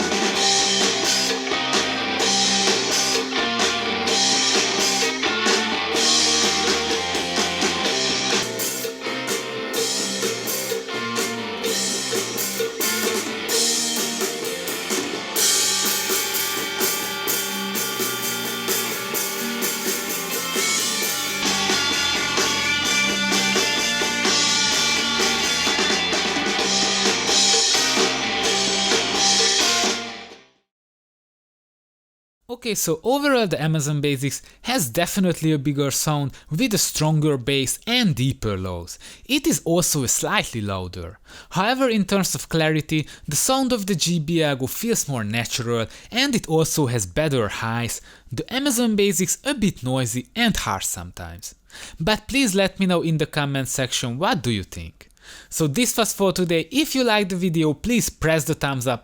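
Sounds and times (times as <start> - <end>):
rock music through small speaker: 0.0 - 30.5.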